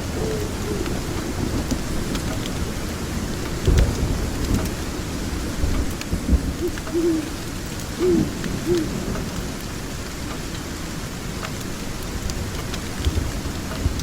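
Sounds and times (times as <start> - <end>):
owl hooting: 0.0 - 1.6, 6.5 - 9.1
thunder rumble: 0.0 - 10.1
steady rain: 0.0 - 14.0
wood fire crackling: 0.0 - 14.0.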